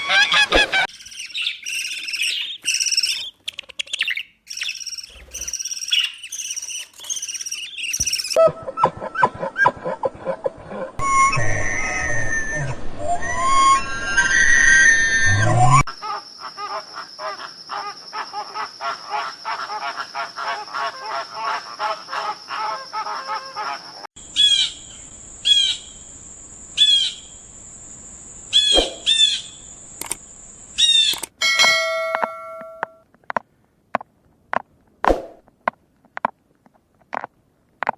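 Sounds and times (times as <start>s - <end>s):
sharp bird chirps sweeping down: 28.6s - 29.6s.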